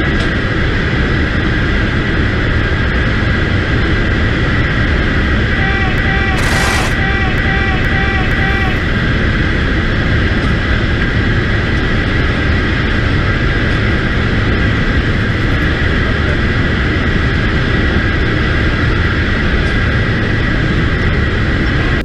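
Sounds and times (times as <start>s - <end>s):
jet engine roaring: 6.2s - 9.3s.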